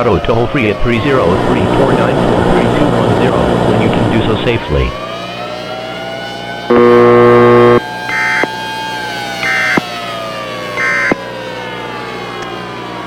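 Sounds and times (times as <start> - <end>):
siren wailing: 0.0 - 13.0
loud buzz: 0.3 - 5.0, 6.6 - 8.5.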